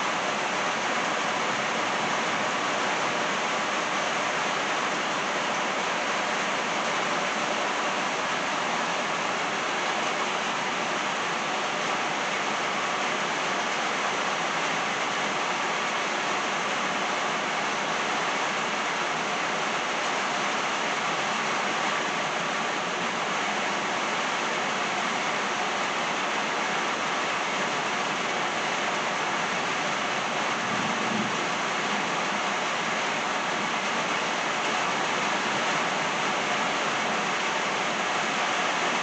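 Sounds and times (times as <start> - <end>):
rain falling on trees: 0.0 - 39.0.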